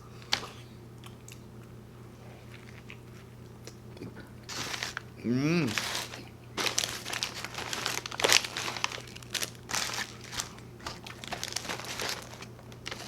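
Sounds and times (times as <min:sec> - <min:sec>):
paper wrapper crinkling: 0:04.5 - 0:13.0.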